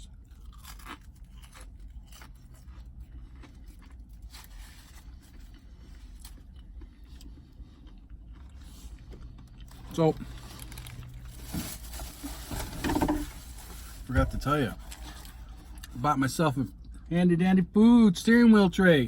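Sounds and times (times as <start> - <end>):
low steady hum: 0.0 - 19.0
food wrapper rustling: 9.6 - 15.9.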